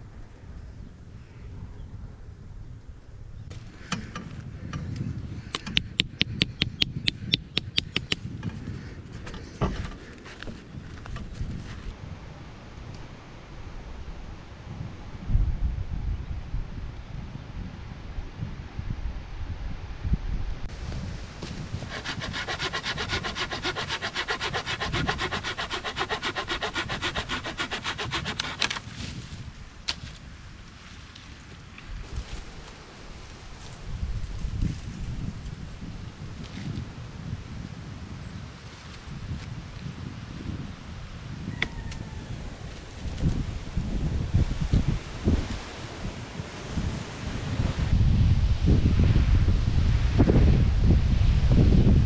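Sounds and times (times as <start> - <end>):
wind rumble on microphone: 0.0 - 52.0
tool strikes on wood: 5.6 - 8.2, 21.4 - 28.8
hand saw cutting wood: 20.7 - 29.2, 41.6 - 47.9.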